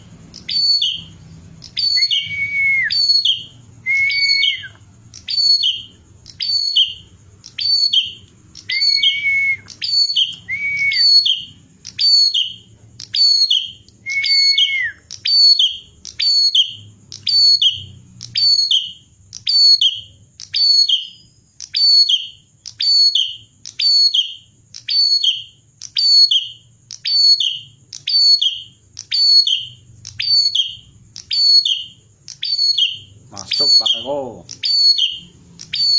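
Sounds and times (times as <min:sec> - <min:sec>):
bird chirping phrases: 0:00.0 - 0:35.9.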